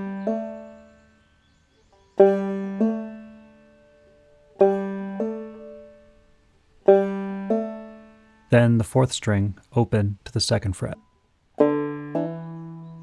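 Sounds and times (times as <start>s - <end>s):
banjo string plucked and hammered on: 0.0s - 1.0s, 2.2s - 8.5s, 11.6s - 13.0s.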